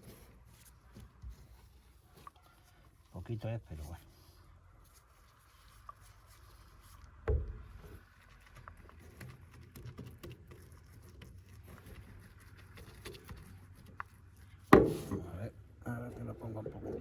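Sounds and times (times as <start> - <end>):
dull knock: 7.3 - 7.7, 14.7 - 15.3.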